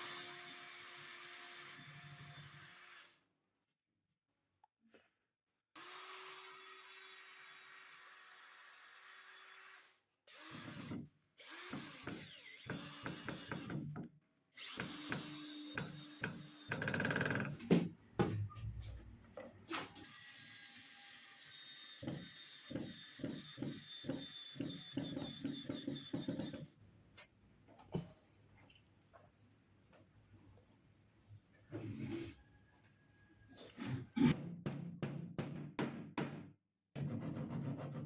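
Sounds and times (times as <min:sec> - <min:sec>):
electric drill on wood: 0:00.0 - 0:03.2, 0:05.8 - 0:17.6, 0:20.0 - 0:26.7.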